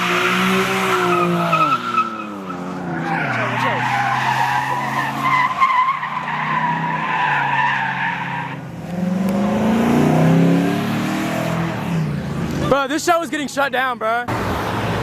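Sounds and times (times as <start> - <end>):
car tires squealing: 0.0 - 8.8
car engine revving: 0.0 - 12.7.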